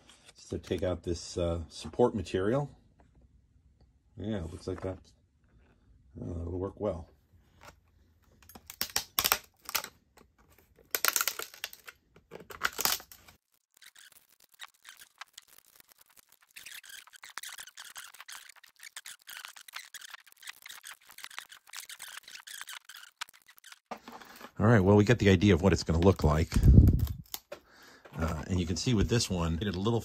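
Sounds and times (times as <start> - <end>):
plastic parts scraping and crackling: 7.5 - 30.0
plastic clicks and rustling: 7.6 - 24.6.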